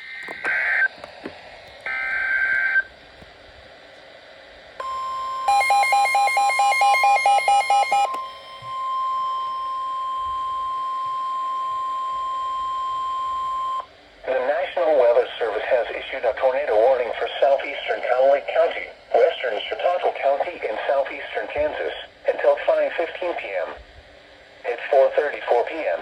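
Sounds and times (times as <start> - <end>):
rapid beeping: 4.8 - 13.8
steady warning alarm tone: 4.8 - 13.9.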